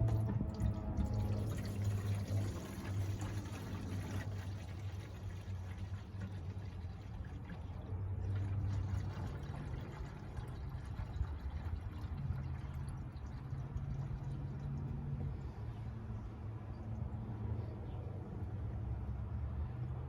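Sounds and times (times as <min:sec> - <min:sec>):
low hum: 0:00.0 - 0:06.3
fluid pouring into reservoir: 0:00.0 - 0:15.6.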